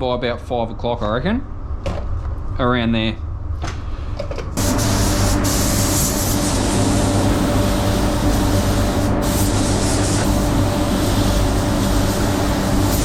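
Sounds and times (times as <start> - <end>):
steady hum: 1.4 - 13.0
spray gun hissing: 4.6 - 13.0.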